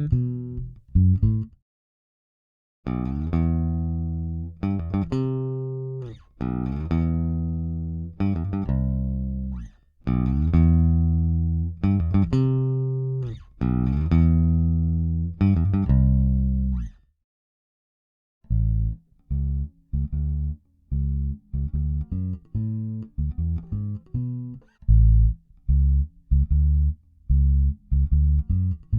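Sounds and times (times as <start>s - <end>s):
electric bass guitar riff: 0.0s - 1.6s, 2.9s - 17.0s, 18.5s - 28.9s.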